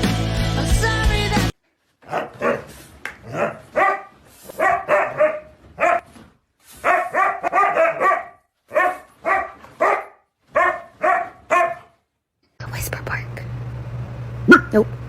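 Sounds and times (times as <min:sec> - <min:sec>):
dog barking: 0:02.1 - 0:06.1, 0:06.8 - 0:12.0, 0:14.5 - 0:14.9.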